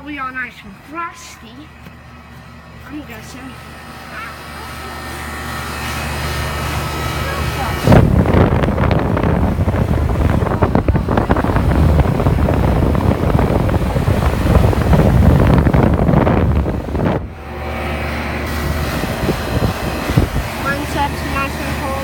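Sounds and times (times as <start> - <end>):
air conditioner unit humming: 0.0 - 22.0
wind buffeting microphone: 5.7 - 17.5, 18.5 - 21.6.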